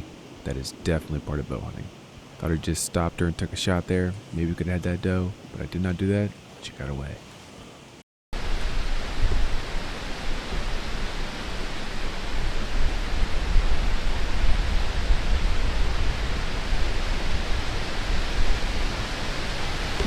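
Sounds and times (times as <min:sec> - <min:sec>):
wind blowing across microphone: 0:08.4 - 0:20.0.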